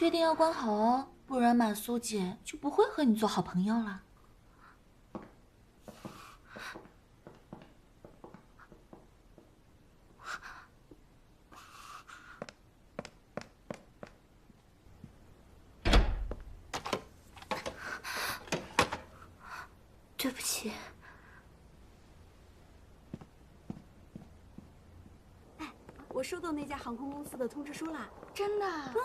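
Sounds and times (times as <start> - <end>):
heavy door thud: 15.8 - 16.4.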